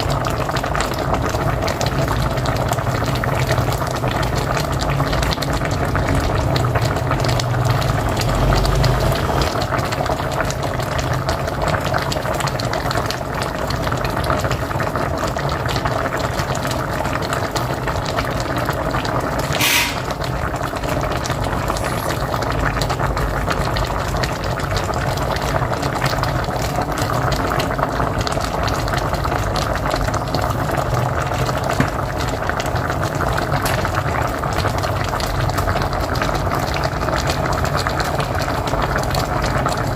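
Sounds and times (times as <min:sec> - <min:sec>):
pot boiling with dense bubbling: 0:00.0 - 0:39.9
brief sharp noise: 0:19.4 - 0:20.2.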